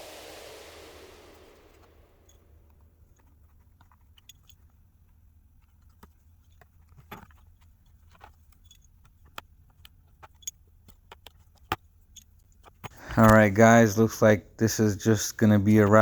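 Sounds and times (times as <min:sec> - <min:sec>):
small parts clicking and tapping: 0:03.1 - 0:13.5.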